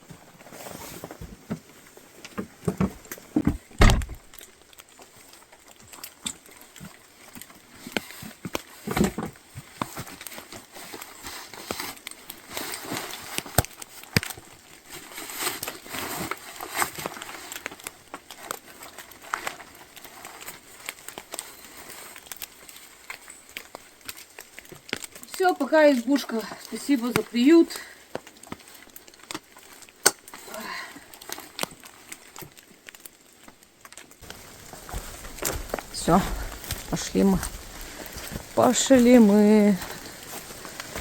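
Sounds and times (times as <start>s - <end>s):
rustling: 0.0s - 41.0s
dull thump: 3.4s - 4.3s.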